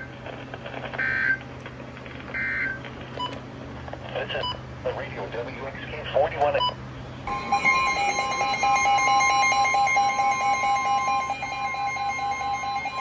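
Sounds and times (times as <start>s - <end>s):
rapidly pulsing alarm beep: 6.6s - 13.0s
steady alarm tone: 7.2s - 13.0s.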